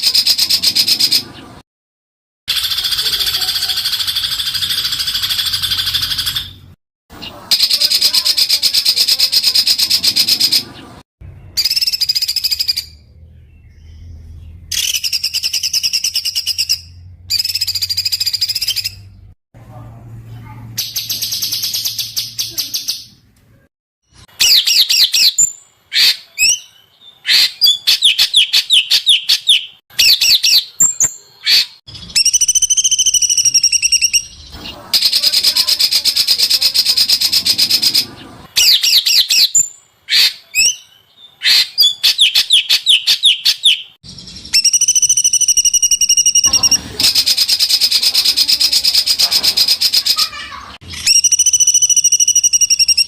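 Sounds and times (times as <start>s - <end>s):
songbird chirping and trills: 7.2s - 19.4s.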